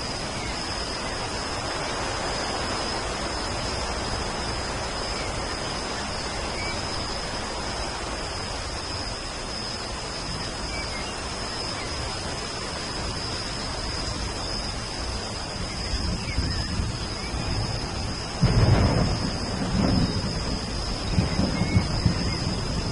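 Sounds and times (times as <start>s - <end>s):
steady rain hiss: 0.0s - 22.9s
faint bird chirps: 10.4s - 12.1s.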